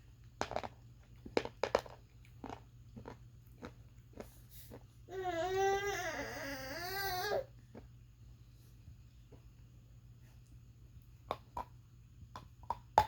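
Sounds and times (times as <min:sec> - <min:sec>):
wavering whining cry: 0:05.1 - 0:07.5.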